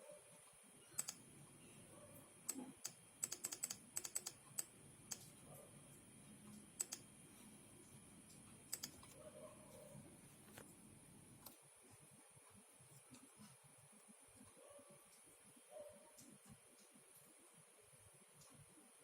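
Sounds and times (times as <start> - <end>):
laptop keyboard clicks: 2.5 - 5.3, 6.8 - 7.0, 8.7 - 9.2.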